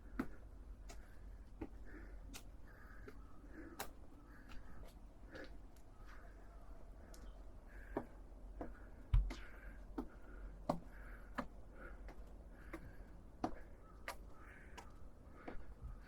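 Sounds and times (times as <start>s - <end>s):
footsteps on a path: 7.2s - 11.0s
person breathing: 7.6s - 13.8s, 14.5s - 16.0s.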